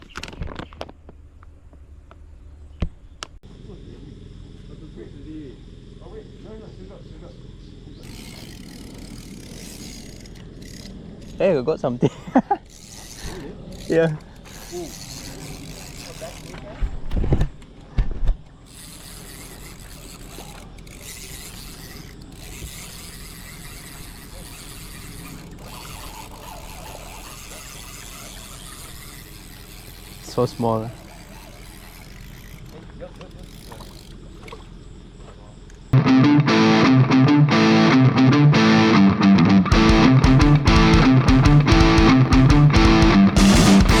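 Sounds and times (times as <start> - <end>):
fishing reel whirring: 8.0 - 16.8, 18.6 - 34.7
distorted electric guitar riff: 36.0 - 44.0.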